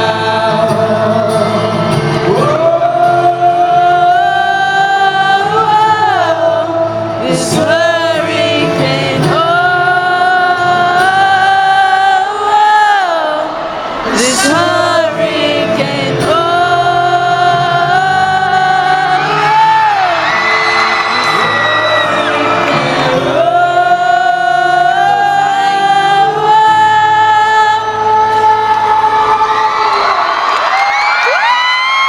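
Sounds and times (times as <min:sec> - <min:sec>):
person singing sliding notes: 0:00.0 - 0:29.2
acoustic guitar chords: 0:00.0 - 0:29.7.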